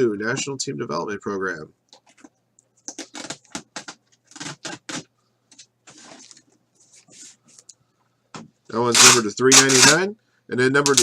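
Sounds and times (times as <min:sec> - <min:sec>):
cards rustling and scraping: 0:02.0 - 0:07.7.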